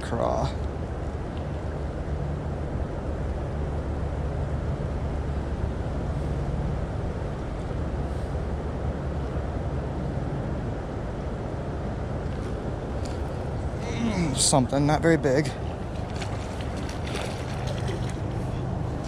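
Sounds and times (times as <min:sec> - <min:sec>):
floodwater rushing: 0:12.4 - 0:19.0.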